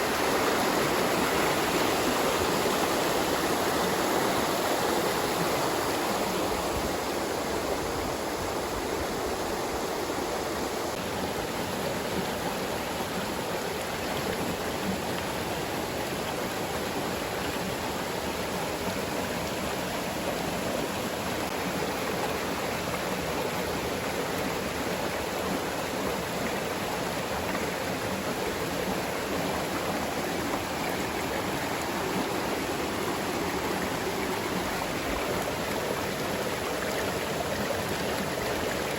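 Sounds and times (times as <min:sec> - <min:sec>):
water rushing: 0:00.0 - 0:38.9.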